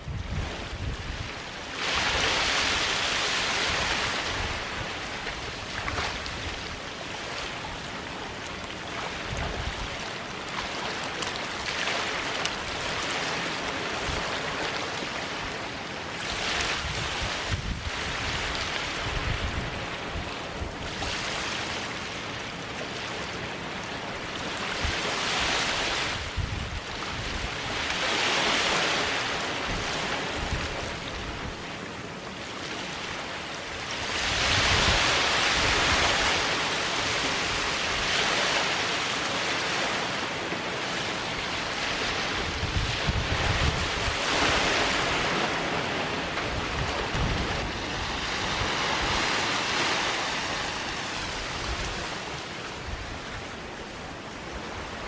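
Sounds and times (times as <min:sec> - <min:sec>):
wind buffeting microphone: 0:00.0 - 0:07.0, 0:16.2 - 0:21.2, 0:24.7 - 0:27.9, 0:41.3 - 0:55.0
small waves breaking on beach: 0:00.0 - 0:55.0.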